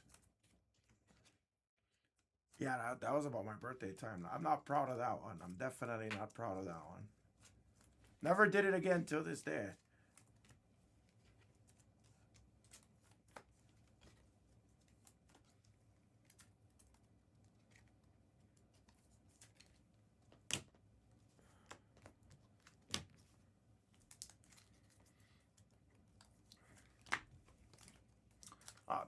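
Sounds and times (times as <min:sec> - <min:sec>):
trading cards clicking and rustling: 0:04.8 - 0:06.7.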